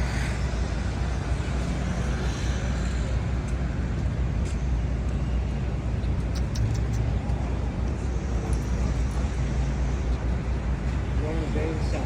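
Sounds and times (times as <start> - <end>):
street traffic rumble: 0.0 - 12.0.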